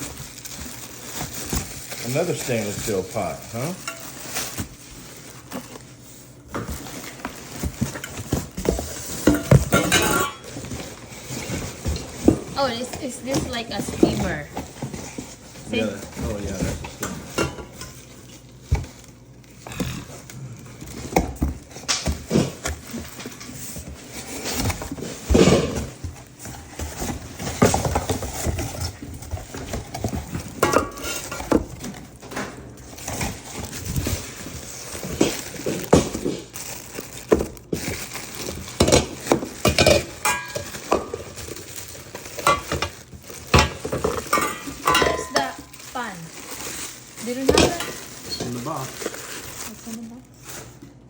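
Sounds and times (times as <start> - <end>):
metal pots and lids clanking: 6.6 - 15.4, 16.1 - 18.0, 26.7 - 34.3, 37.8 - 46.1, 47.2 - 48.6.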